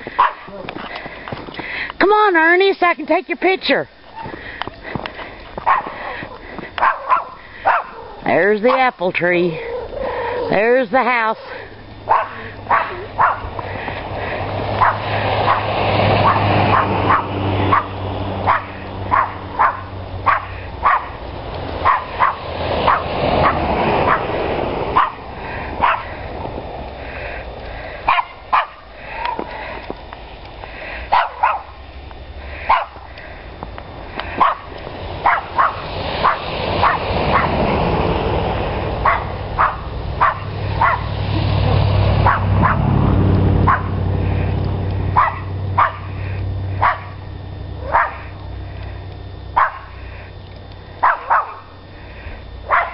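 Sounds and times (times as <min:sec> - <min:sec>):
steady background hiss: 0:00.0 - 0:52.9
dogs barking with sharp yips: 0:00.1 - 0:00.6, 0:05.6 - 0:08.9, 0:12.0 - 0:13.9, 0:14.8 - 0:21.2, 0:21.8 - 0:26.2, 0:28.1 - 0:29.7, 0:31.1 - 0:31.8, 0:32.5 - 0:33.1, 0:34.2 - 0:37.6, 0:39.0 - 0:41.2, 0:42.2 - 0:42.9, 0:43.6 - 0:44.0, 0:45.1 - 0:47.2, 0:47.8 - 0:48.4, 0:49.5 - 0:50.1, 0:50.9 - 0:51.8, 0:52.6 - 0:52.9.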